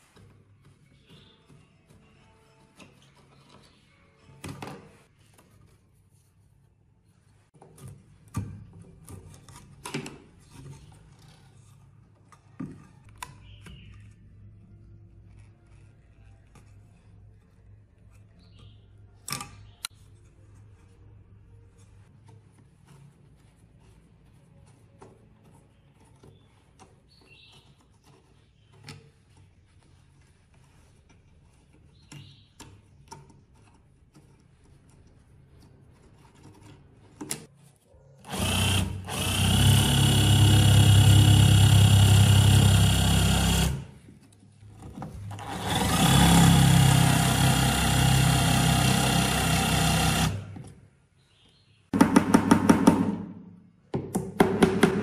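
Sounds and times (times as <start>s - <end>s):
power tool running: 38.3s - 43.9s, 45.3s - 50.6s.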